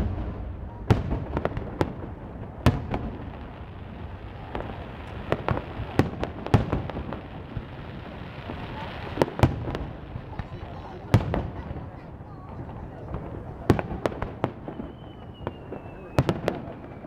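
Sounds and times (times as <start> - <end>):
low rumble: 0.0 - 4.5
fireworks bangs: 0.0 - 17.0.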